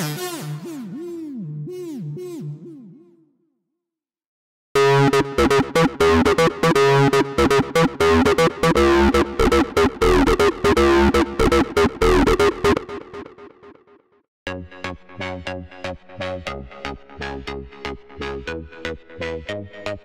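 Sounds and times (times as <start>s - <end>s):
synth bass line: 0.3s - 3.3s, 4.8s - 13.7s
bright synth notes: 4.8s - 13.3s.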